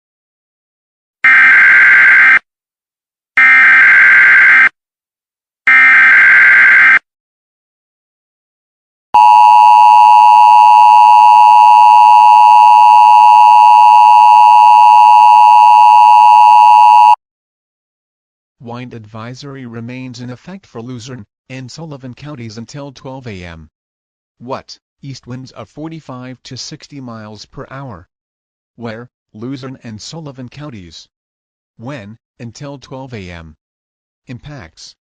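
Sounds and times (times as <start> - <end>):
two-tone attention signal: 9.2 - 17.2.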